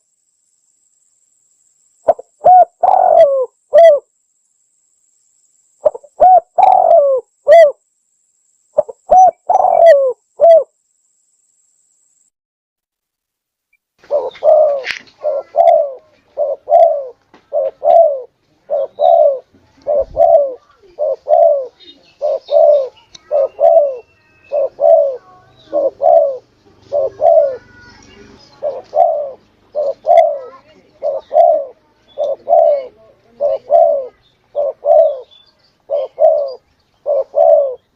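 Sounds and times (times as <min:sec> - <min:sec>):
dove cooing: 0:02.1 - 0:04.1, 0:05.8 - 0:07.8, 0:08.8 - 0:10.7, 0:14.0 - 0:37.9.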